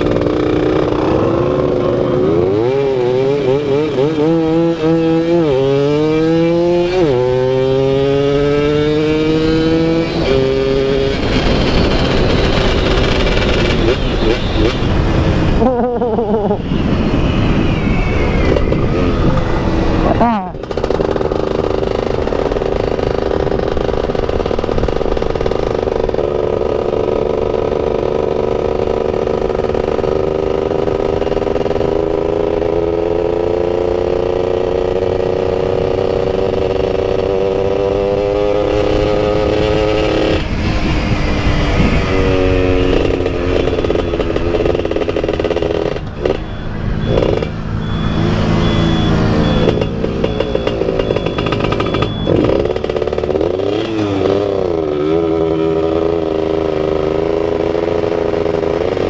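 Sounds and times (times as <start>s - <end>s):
motorcycle engine under load: 0.0s - 16.4s, 18.4s - 59.0s
wind rush: 9.7s - 22.3s, 40.1s - 43.2s.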